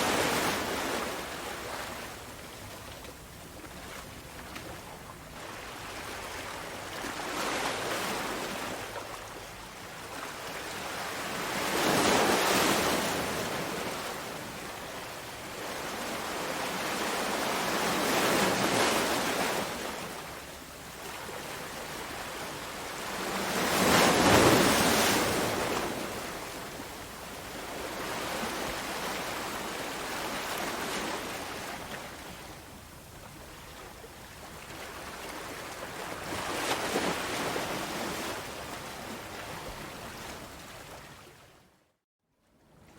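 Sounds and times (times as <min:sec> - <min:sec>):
ocean waves breaking: 0:00.0 - 0:02.2, 0:21.4 - 0:26.8.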